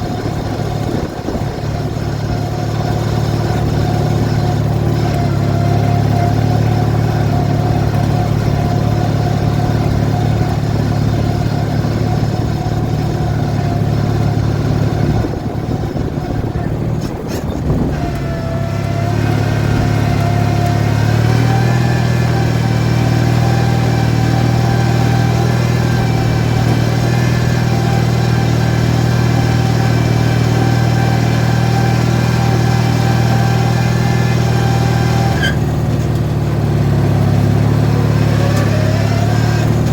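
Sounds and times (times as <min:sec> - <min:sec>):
lawn tractor engine running: 0:00.0 - 0:39.9.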